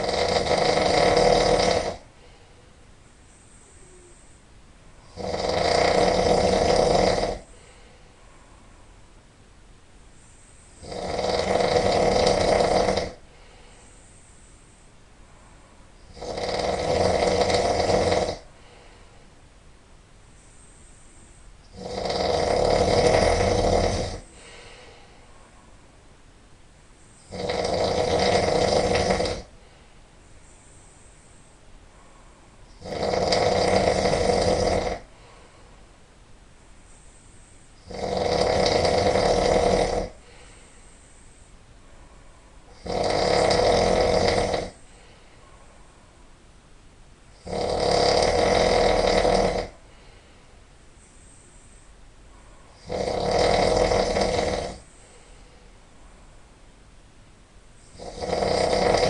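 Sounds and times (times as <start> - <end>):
person snoring loudly: 0.0 - 2.1, 5.0 - 7.8, 10.7 - 13.2, 16.0 - 18.5, 21.6 - 25.0, 27.2 - 29.5, 32.7 - 35.2, 37.8 - 40.6, 42.7 - 44.8, 47.4 - 49.8, 52.8 - 54.9, 57.9 - 59.0.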